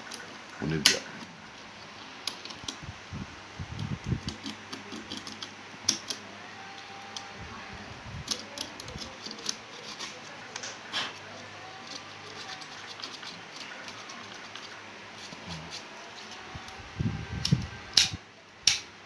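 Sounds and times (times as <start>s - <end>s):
small clicks and taps of parts: 3.8s - 6.2s, 17.4s - 18.9s.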